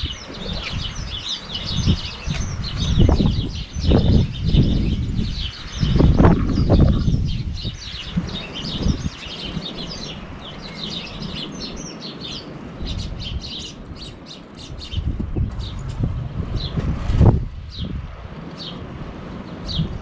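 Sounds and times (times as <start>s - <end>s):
small songbirds chirping: 0.0s - 20.0s.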